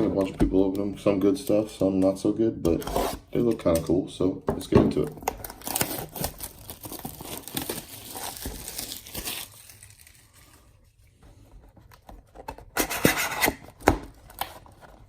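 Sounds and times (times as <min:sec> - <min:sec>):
plastic wrapping crinkling and tearing: 0:05.2 - 0:11.0.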